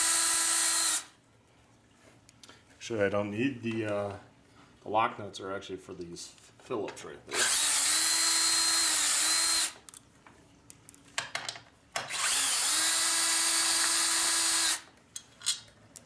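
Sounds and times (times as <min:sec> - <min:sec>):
power drill-driver running: 0:00.0 - 0:01.1, 0:07.3 - 0:09.8, 0:12.0 - 0:14.9.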